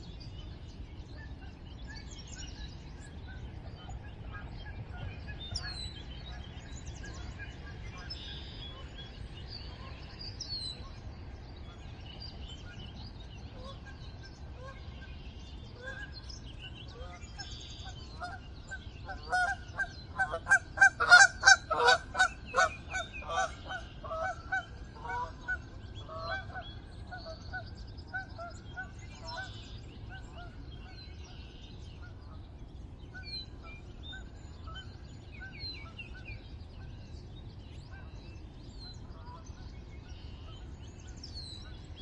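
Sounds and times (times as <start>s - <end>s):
geese honking: 18.2s - 26.6s.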